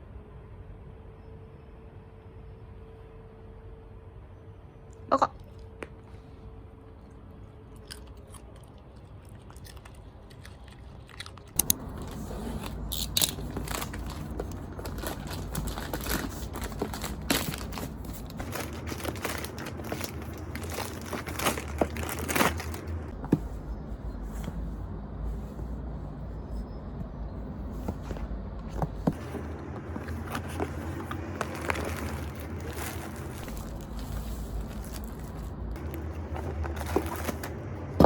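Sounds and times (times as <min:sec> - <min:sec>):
dog crunching food: 0:07.6 - 0:23.1.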